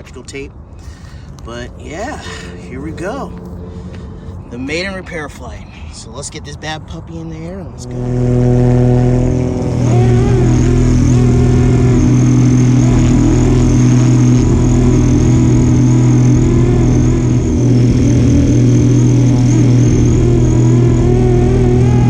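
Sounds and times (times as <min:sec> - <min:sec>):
rc helicopter motor and rotors: 0:07.8 - 0:22.0.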